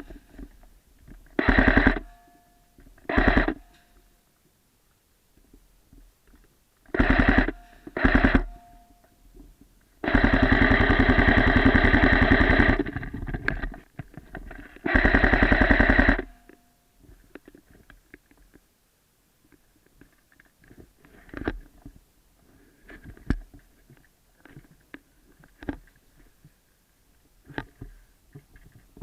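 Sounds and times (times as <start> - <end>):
airsoft gun firing bursts: 1.4 - 2.2, 3.1 - 3.7, 6.9 - 8.7, 10.0 - 13.2, 14.8 - 16.4.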